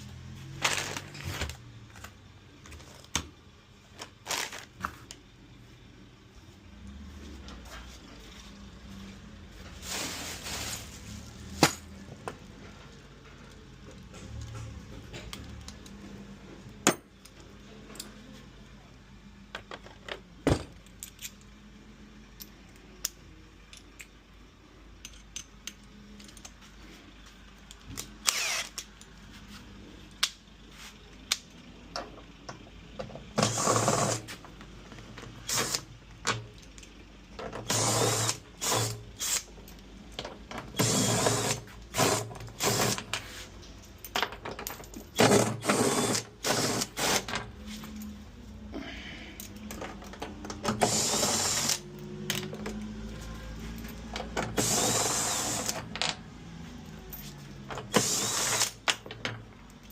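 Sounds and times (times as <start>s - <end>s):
power drill running: 28.2s - 28.8s, 33.4s - 34.3s, 35.5s - 35.8s, 37.6s - 39.5s, 40.7s - 43.0s, 45.2s - 47.3s, 50.7s - 51.8s, 54.5s - 55.8s, 57.9s - 58.8s.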